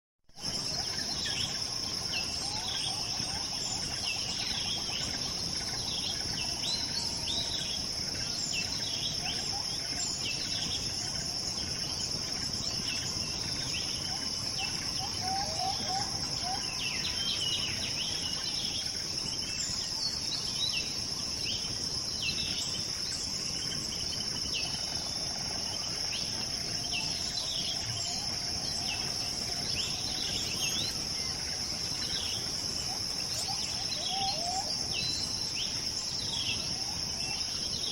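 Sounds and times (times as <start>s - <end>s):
insect drone: 0.3s - 37.9s
bird chirps: 11.6s - 37.9s.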